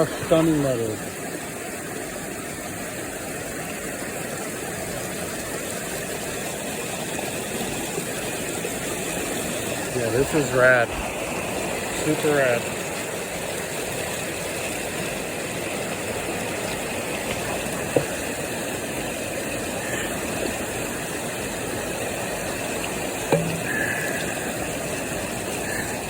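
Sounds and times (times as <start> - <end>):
river water and waterfalls rushing: 0.0 - 26.0
sharp knocks: 23.3 - 23.7.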